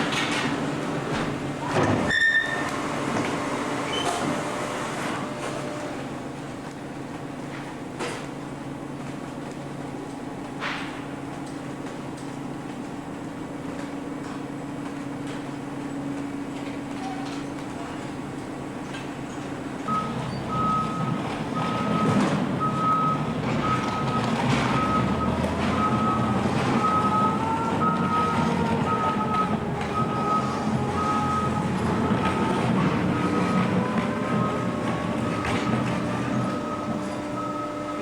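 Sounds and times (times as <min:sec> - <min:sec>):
machinery hum: 0:12.1 - 0:38.0
reversing alarm beeping: 0:19.9 - 0:38.0.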